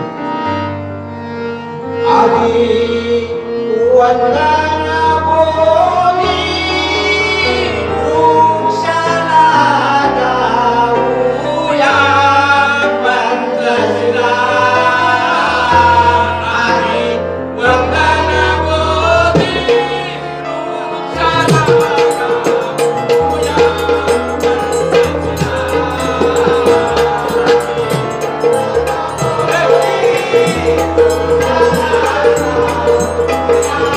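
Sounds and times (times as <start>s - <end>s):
harmonium chords: 0.0s - 33.9s
person singing: 17.6s - 33.9s.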